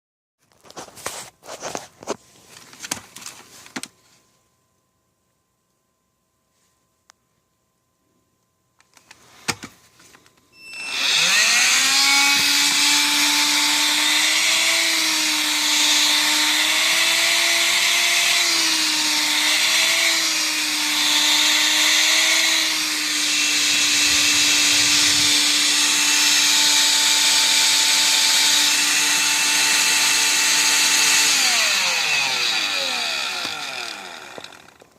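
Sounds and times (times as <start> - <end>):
vacuum motor whine: 10.6 - 34.9.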